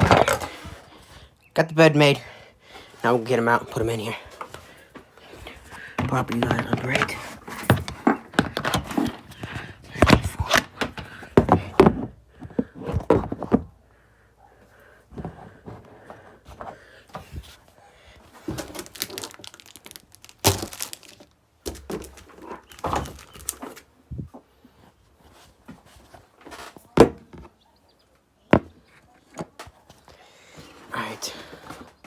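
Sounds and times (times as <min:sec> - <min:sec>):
knocks and clatter from handling: 0:05.3 - 0:13.7, 0:18.5 - 0:23.8.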